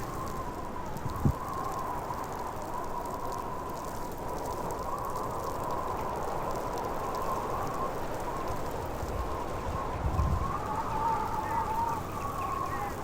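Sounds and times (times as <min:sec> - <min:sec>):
whistling howl: 0:00.0 - 0:03.7, 0:07.0 - 0:13.0
blizzard wind howling: 0:00.0 - 0:13.0.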